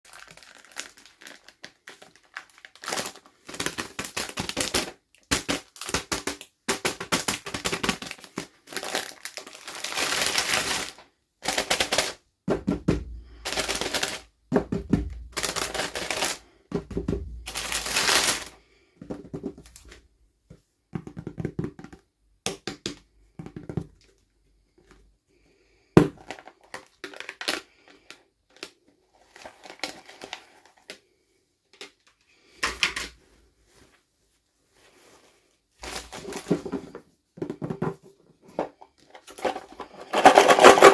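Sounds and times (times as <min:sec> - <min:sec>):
plastic packaging crinkling: 0:00.1 - 0:12.2, 0:13.4 - 0:16.4, 0:17.2 - 0:18.6, 0:35.8 - 0:36.8, 0:39.1 - 0:40.9.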